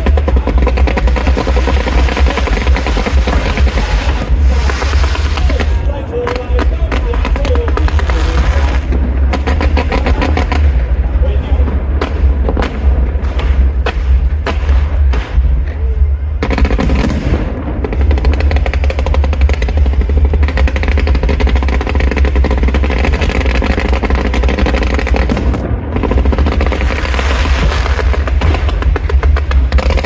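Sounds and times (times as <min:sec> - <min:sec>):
fireworks crackling: 0:00.0 - 0:30.0.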